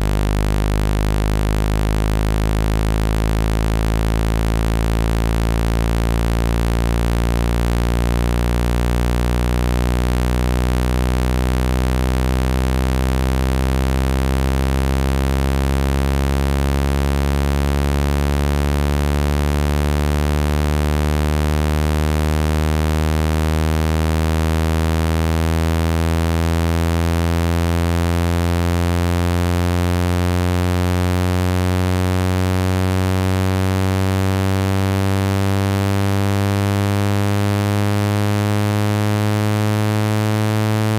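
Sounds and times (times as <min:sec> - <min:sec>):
synthetic low buzzing drone: 0:00.0 - 0:40.9.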